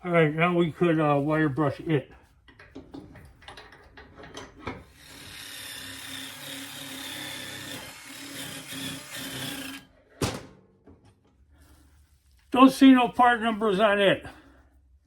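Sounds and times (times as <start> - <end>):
power wire brush scrubbing metal: 4.9 - 9.9.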